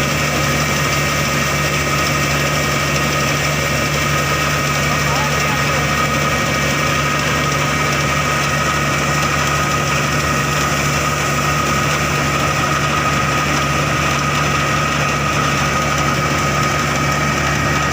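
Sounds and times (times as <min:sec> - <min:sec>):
combine harvester engine: 0:00.0 - 0:17.9.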